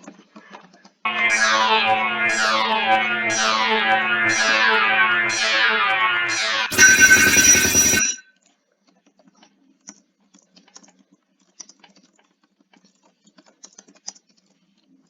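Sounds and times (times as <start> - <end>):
alert noise burst with high tone: 1.1 - 8.2
low hum: 1.1 - 8.2.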